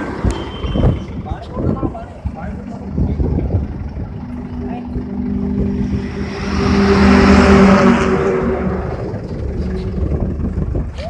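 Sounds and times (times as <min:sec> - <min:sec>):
rush of noise: 0:00.0 - 0:11.0
tractor engine humming: 0:00.0 - 0:11.0.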